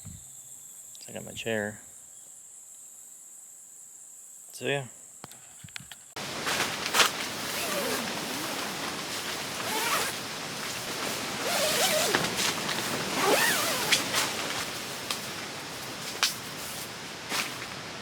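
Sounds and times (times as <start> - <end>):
zipper and nylon fabric rustling: 6.2 - 17.7.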